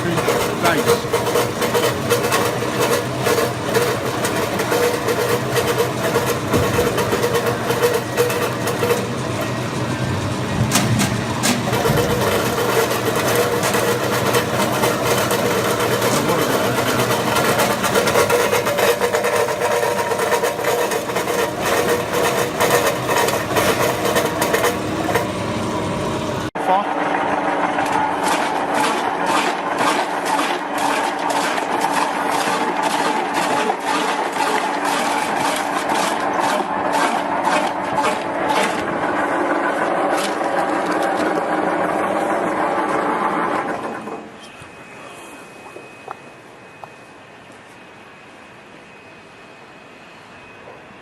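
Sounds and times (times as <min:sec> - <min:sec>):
rapid cutting mechanism clatter: 0:00.0 - 0:09.4, 0:10.7 - 0:25.3, 0:27.8 - 0:41.7
machine motor hum: 0:00.0 - 0:47.7.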